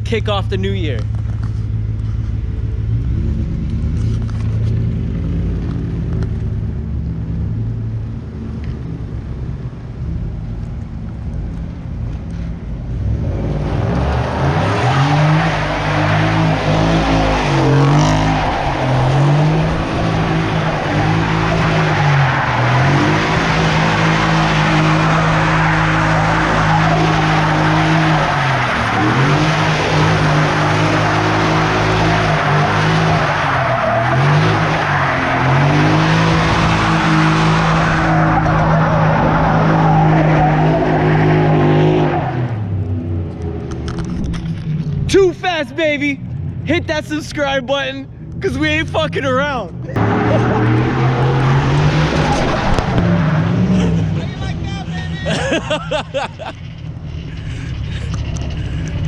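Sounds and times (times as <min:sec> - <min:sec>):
truck engine revving: 0:13.0 - 0:44.6, 0:48.2 - 0:59.0
tires squealing and skidding: 0:13.1 - 0:42.8, 0:48.5 - 0:59.0.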